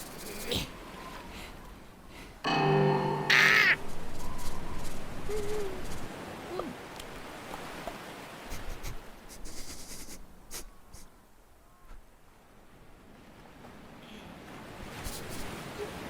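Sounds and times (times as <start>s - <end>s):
hoot-like vocal calls: 3.3s - 6.8s.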